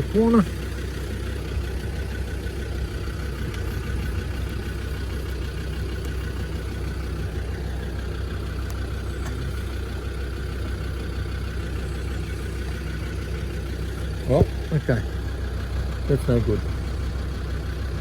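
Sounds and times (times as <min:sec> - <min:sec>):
low engine drone: 0:00.0 - 0:18.0
faint clicks: 0:08.6 - 0:09.9.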